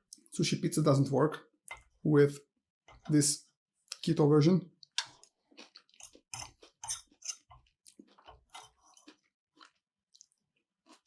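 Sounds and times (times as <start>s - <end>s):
close-miked chewing: 4.8s - 11.0s.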